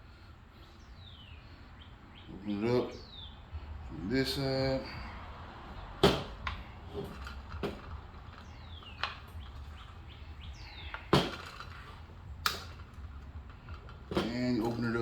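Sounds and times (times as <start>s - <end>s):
latches snapping clicks: 10.8s - 15.0s.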